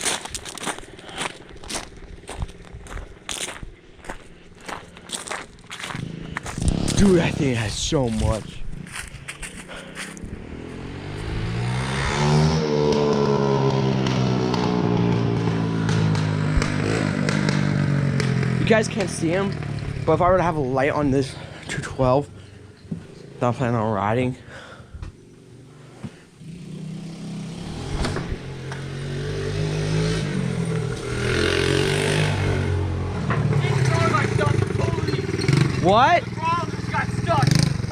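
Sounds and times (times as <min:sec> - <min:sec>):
small engine revving: 0:05.8 - 0:07.8, 0:08.8 - 0:20.1, 0:25.8 - 0:36.2, 0:36.9 - 0:37.9.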